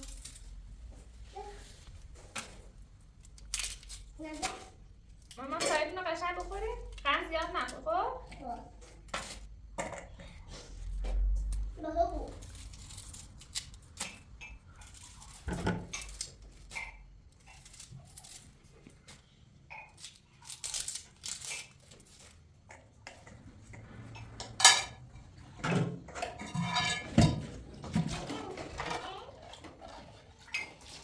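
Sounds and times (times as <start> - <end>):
dishes and cutlery clinking: 22.7 - 31.0.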